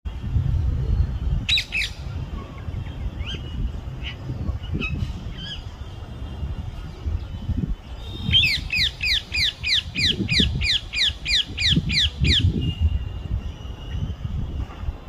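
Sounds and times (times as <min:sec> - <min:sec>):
steady low rumble: 0:00.1 - 0:15.0.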